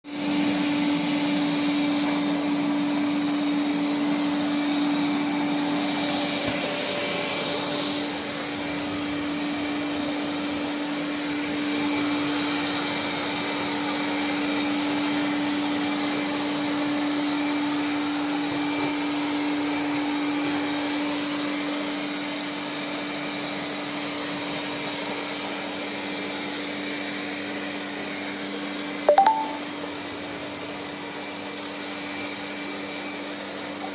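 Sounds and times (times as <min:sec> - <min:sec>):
robot vacuum cleaner running: 0:00.1 - 0:33.9.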